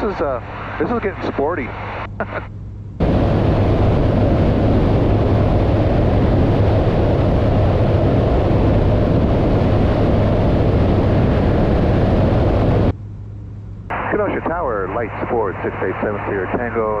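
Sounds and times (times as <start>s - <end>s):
aircraft engine and propeller drone: 0.0s - 17.0s
rushing wind: 3.0s - 13.0s.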